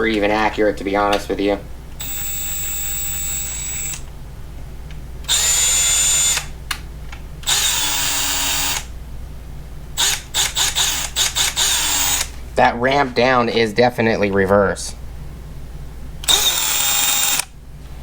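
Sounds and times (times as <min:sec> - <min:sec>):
impact wrench motor whine: 0:02.0 - 0:04.1, 0:05.3 - 0:06.5, 0:07.4 - 0:08.9, 0:10.0 - 0:12.4, 0:16.2 - 0:17.5.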